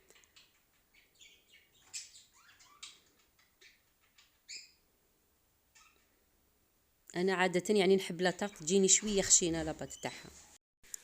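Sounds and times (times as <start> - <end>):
faint bird chirps: 0.1 - 4.8, 5.7 - 6.1.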